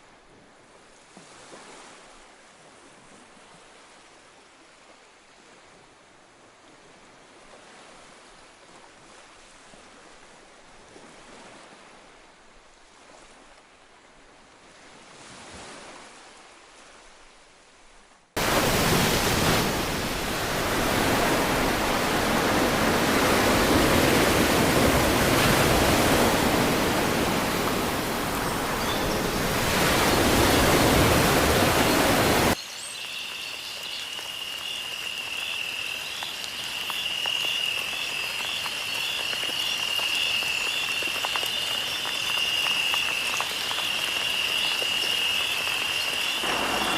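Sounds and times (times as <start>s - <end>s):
rushing water: 0.0s - 46.9s
faint outdoor ambience: 16.6s - 46.9s.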